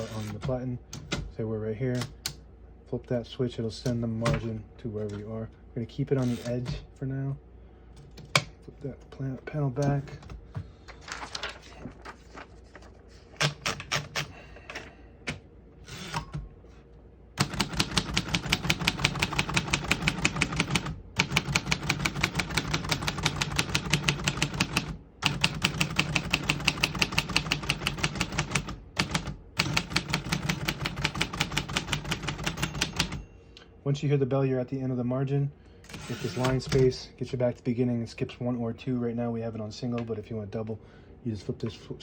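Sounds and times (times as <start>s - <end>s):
manual typewriter typing: 0.0s - 1.2s, 13.4s - 14.4s, 17.4s - 33.2s, 35.9s - 37.0s.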